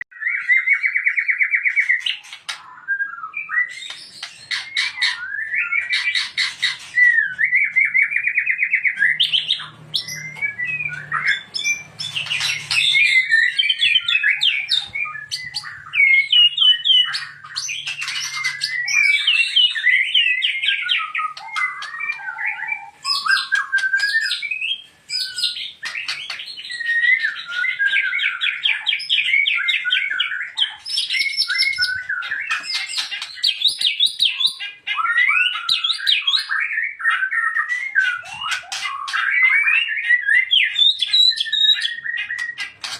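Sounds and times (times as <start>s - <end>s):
songbird singing trills and whistles: 0.0s - 42.9s.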